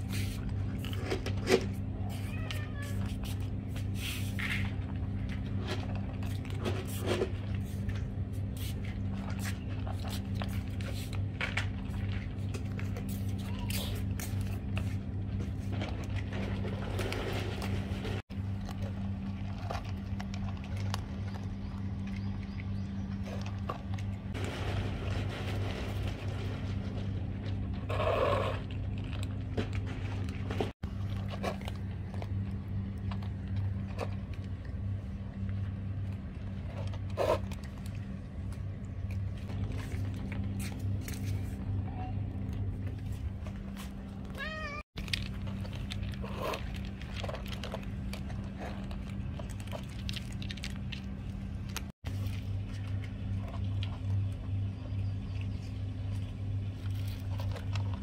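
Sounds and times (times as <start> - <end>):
steady low hum: 0.0 - 58.0
cat meowing: 2.0 - 3.1, 44.3 - 44.8.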